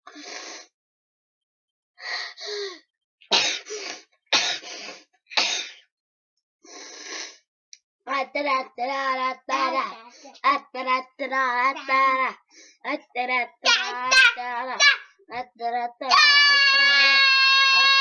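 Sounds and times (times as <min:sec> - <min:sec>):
child singing: 0:12.9 - 0:17.1.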